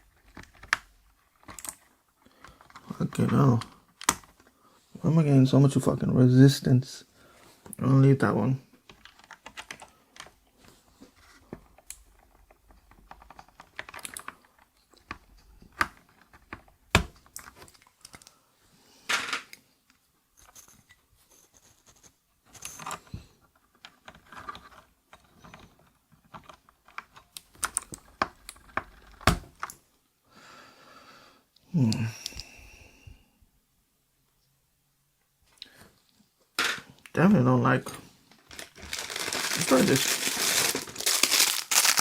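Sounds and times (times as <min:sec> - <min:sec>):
plastic clicks and scrapes: 0:20.4 - 0:29.8.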